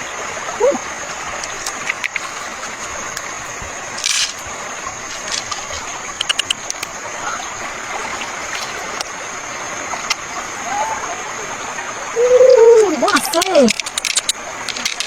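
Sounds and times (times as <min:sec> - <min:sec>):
rushing stream water: 0:00.0 - 0:15.0
steady high hiss: 0:00.0 - 0:15.0
short clicks and splashes: 0:01.3 - 0:07.0, 0:08.0 - 0:09.2, 0:13.0 - 0:15.0.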